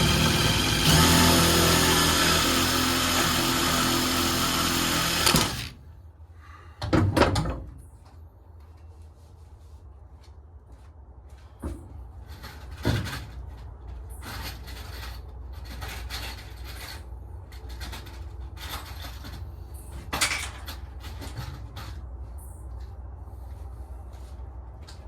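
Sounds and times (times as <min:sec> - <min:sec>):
rustling or scraping: 0:08.0 - 0:25.0.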